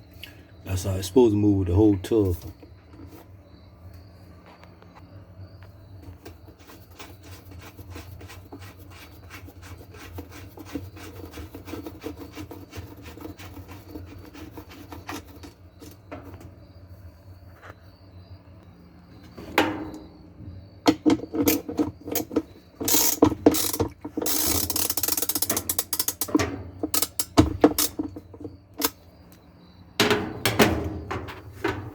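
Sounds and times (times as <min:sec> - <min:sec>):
ratchet wrench clicking: 0:22.8 - 0:26.3
metal clatter: 0:30.0 - 0:31.9.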